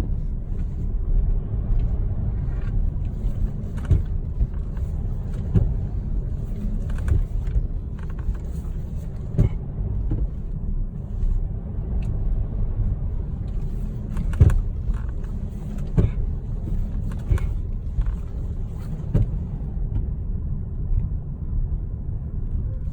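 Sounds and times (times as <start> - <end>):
car road rumble: 0.0 - 22.9
suspension knocks: 1.7 - 10.7, 13.4 - 20.2.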